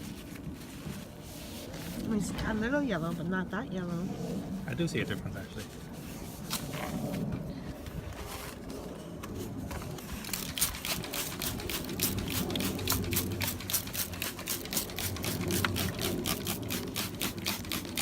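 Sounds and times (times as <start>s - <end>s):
rapid rubbing on plastic: 8.1s - 18.0s.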